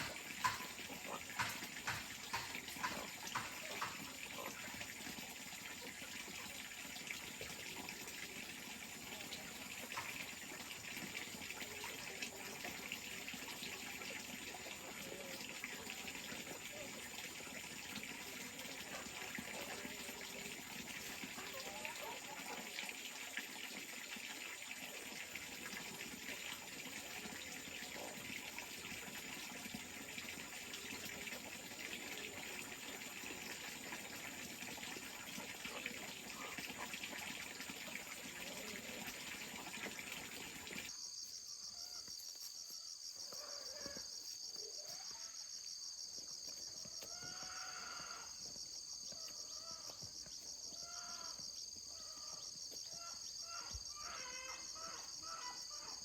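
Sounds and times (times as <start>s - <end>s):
water running: 0.0s - 40.9s
insects droning: 0.0s - 56.0s.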